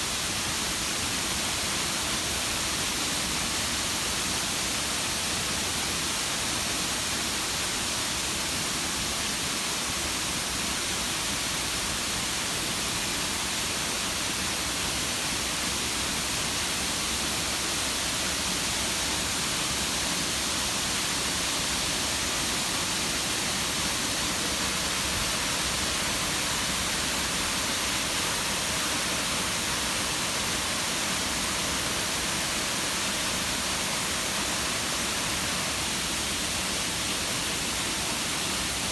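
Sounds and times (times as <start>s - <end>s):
waterfall rushing: 18.9s - 38.9s.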